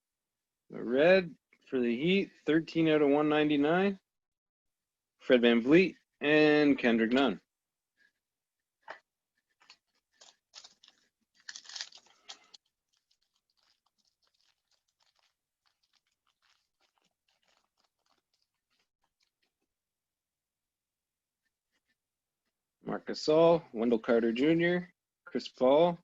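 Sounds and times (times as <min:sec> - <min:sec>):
cards ticking: 0:08.9 - 0:19.4
plastic wrapper crinkling: 0:09.4 - 0:19.6.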